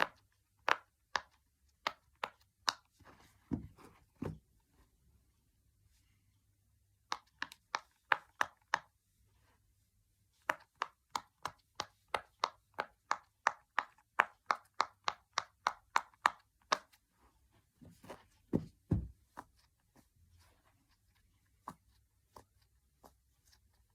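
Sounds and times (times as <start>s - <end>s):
dull thumps: 17.8s - 19.3s.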